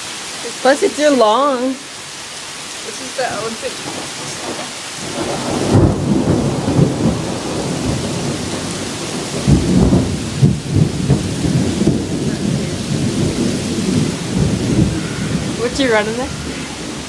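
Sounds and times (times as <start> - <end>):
heavy rain pouring: 0.0 - 17.0
deep rumbling: 9.4 - 17.0.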